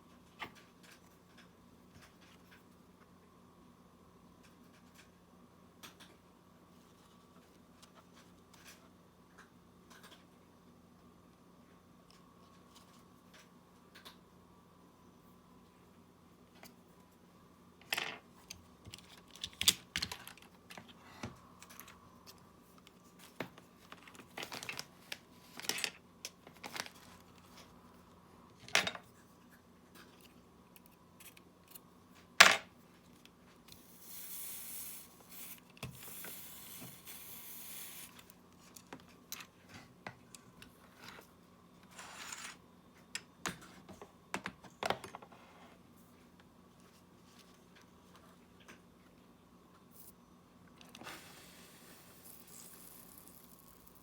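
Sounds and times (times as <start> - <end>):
soft hissing scraping: 51.0 - 53.9.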